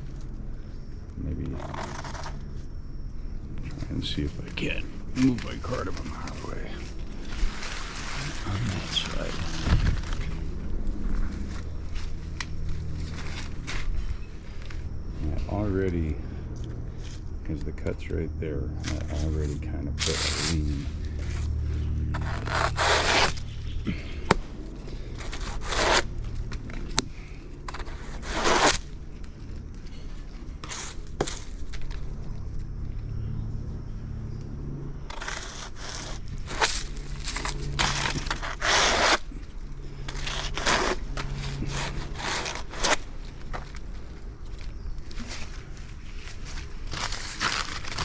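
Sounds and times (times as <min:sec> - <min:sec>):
blade scraping plant stem: 0:01.4 - 0:02.6, 0:03.7 - 0:10.5, 0:18.8 - 0:24.3, 0:25.2 - 0:29.2, 0:30.6 - 0:31.6, 0:35.1 - 0:43.8, 0:46.2 - 0:48.0.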